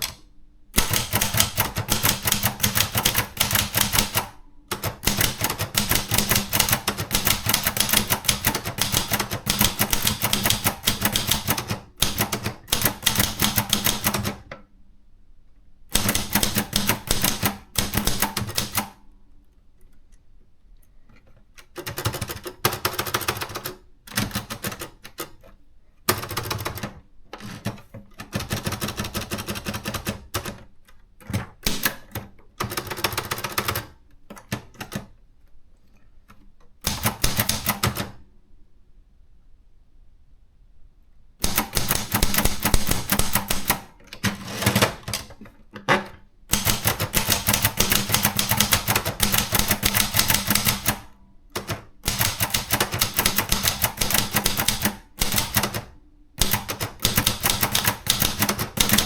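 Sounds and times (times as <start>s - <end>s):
typewriter keys clacking: 0.0s - 0.2s, 0.8s - 14.4s, 16.0s - 18.9s, 21.7s - 25.4s, 41.4s - 45.4s, 46.5s - 59.0s.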